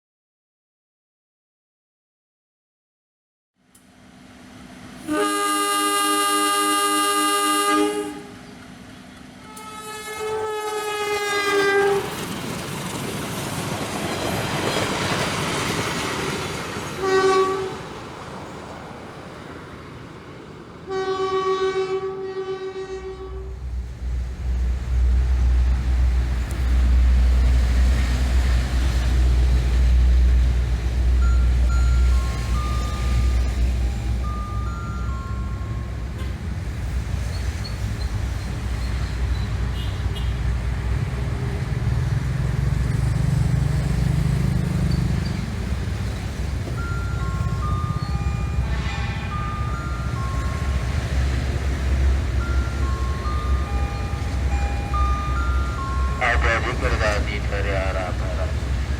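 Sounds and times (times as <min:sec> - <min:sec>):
rolling train rumble: 0:03.7 - 0:58.9
train passing close: 0:03.7 - 0:58.9
locomotive horn blasts: 0:05.0 - 0:08.5, 0:09.4 - 0:12.2, 0:17.0 - 0:17.9, 0:20.9 - 0:23.6, 0:48.6 - 0:49.7.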